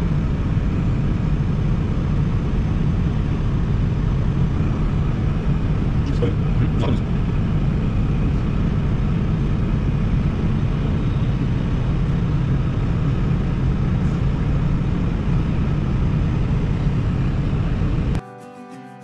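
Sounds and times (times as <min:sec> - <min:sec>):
diesel engine droning: 0:00.0 - 0:18.2
acoustic guitar music: 0:18.2 - 0:19.0.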